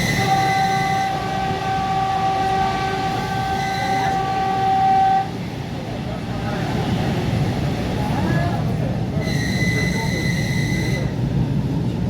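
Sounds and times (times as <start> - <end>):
train horn: 0.0 - 5.4, 9.2 - 11.1
moving train rumble: 0.0 - 12.0.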